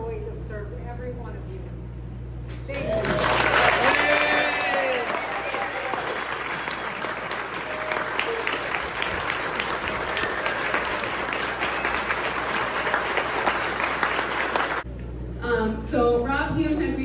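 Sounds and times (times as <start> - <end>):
crowd applauding: 2.7 - 14.9.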